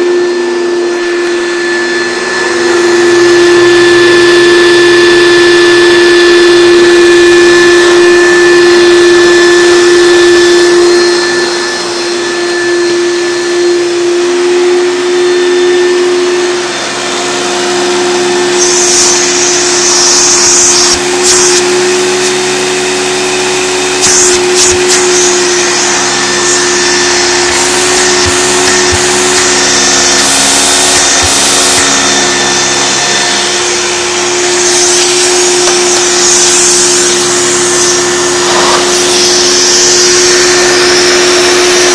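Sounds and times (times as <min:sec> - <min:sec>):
vacuum cleaner motor whine: 0:00.0 - 0:41.9
hissing rush of air: 0:24.0 - 0:41.9.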